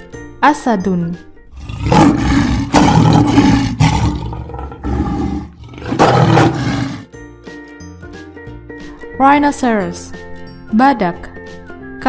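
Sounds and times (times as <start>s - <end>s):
lion roaring: 1.5s - 7.1s.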